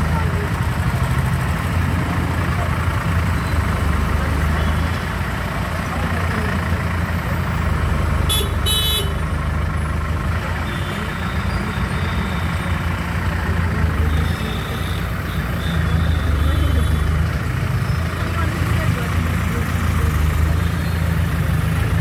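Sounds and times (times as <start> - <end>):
vehicle engines idling: 0.0 - 22.0
car horn honks: 8.2 - 9.3.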